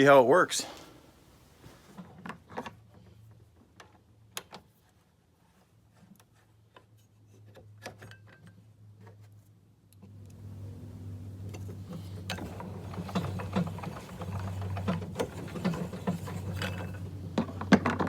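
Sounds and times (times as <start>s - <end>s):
tools and metal parts clattering: 11.5s - 18.0s.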